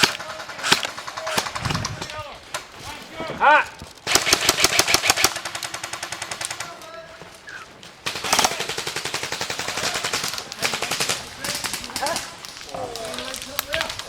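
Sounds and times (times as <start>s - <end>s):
airsoft rifles firing full auto: 0.0s - 2.7s, 4.0s - 7.0s, 8.0s - 12.4s.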